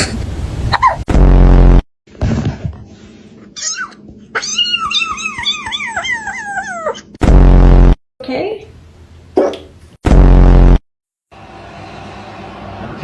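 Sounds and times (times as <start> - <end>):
cat mewing: 3.6 - 7.2.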